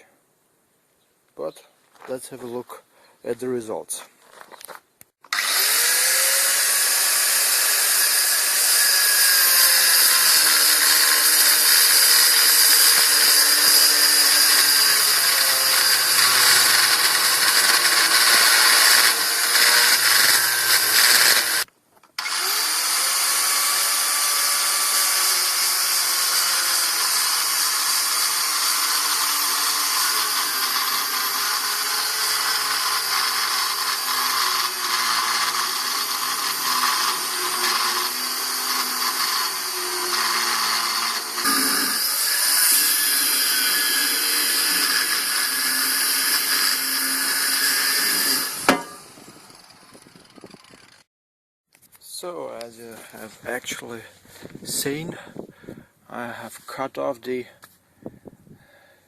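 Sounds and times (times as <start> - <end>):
angle grinder cutting steel: 5.3 - 51.0.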